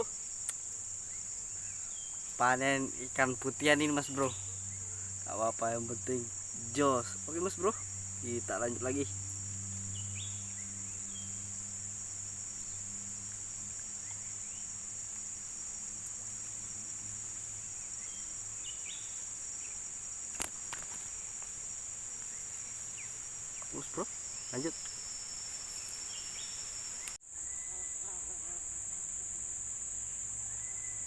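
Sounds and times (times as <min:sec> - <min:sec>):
insects chorus: 0:00.0 - 0:31.0
sharp click: 0:20.3 - 0:21.0.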